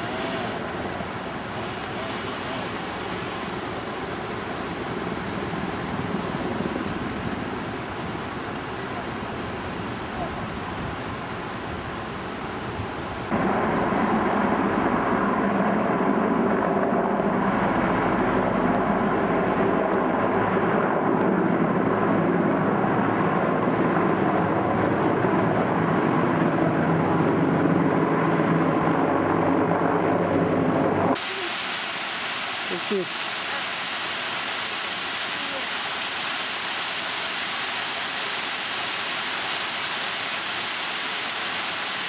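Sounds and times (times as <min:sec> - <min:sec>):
waterfall roaring: 0:00.0 - 0:14.0, 0:31.2 - 0:42.0.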